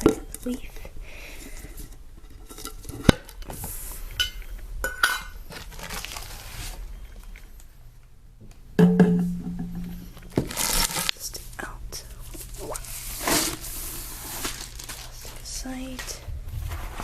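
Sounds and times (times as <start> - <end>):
packaging rustling: 5.5 - 7.4, 10.2 - 11.3, 12.3 - 17.0.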